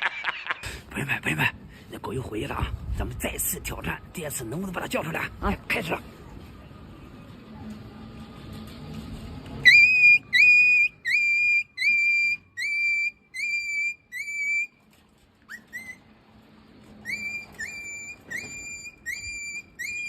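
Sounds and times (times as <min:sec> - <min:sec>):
quick whistle chirps: 0:09.6 - 0:14.7, 0:15.5 - 0:16.0, 0:17.0 - 0:20.0
high swooping whistle calls: 0:09.6 - 0:14.8, 0:15.5 - 0:16.1, 0:17.0 - 0:20.0.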